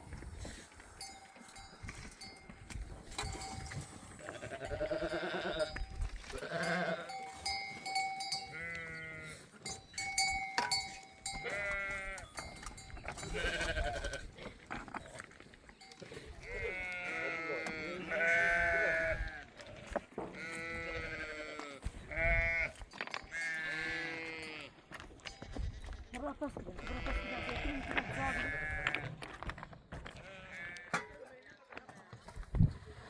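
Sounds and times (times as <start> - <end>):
animal bells clinking: 0.4 - 17.0, 22.9 - 27.3
sheep and goats bleating: 0.4 - 29.3, 30.0 - 31.4.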